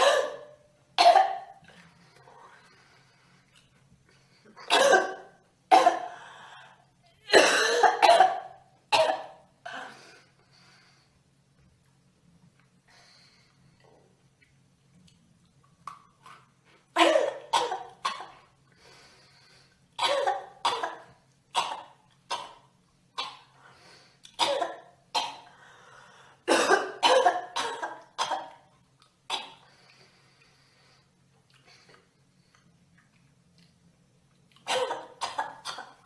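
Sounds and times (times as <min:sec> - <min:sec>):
girl coughing: 0:00.0 - 0:01.5, 0:04.7 - 0:06.1, 0:07.2 - 0:09.9, 0:17.0 - 0:18.3, 0:20.0 - 0:22.6, 0:24.4 - 0:25.4, 0:26.5 - 0:28.5, 0:34.7 - 0:36.0.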